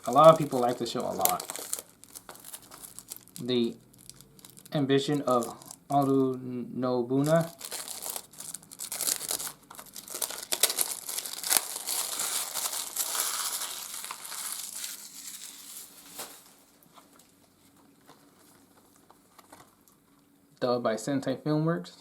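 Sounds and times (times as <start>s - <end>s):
plastic wrapping crinkling and tearing: 0.0s - 6.4s, 7.2s - 17.4s.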